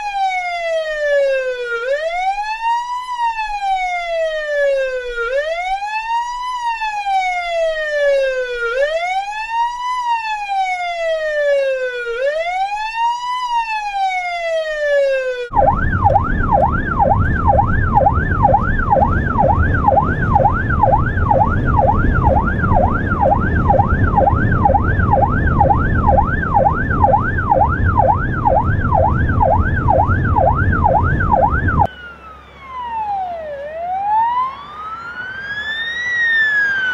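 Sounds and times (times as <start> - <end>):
police siren wailing and yelping: 0.0 - 36.9
heavy low rumble: 15.5 - 31.9.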